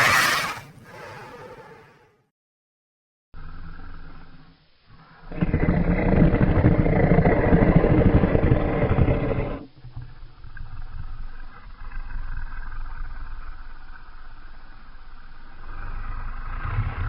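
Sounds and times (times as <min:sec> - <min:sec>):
deep creature growl: 0:03.4 - 0:09.8, 0:15.6 - 0:17.0.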